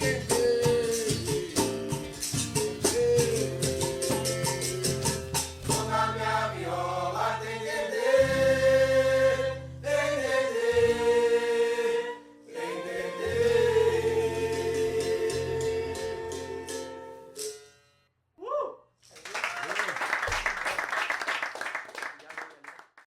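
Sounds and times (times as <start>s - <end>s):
voices singing held notes: 5.7s - 16.9s.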